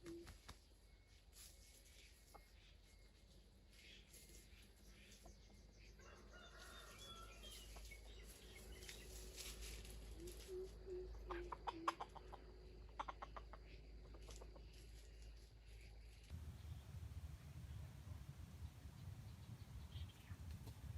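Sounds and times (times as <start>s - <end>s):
junglefowl clucking: 8.7s - 15.0s.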